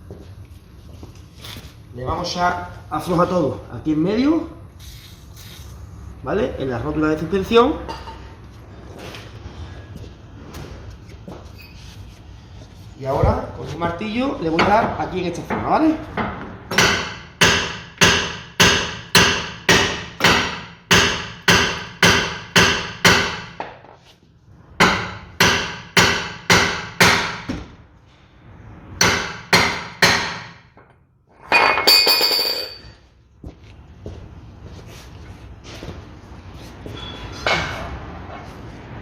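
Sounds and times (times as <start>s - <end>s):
metal ringing clatter: 31.5s - 33.0s.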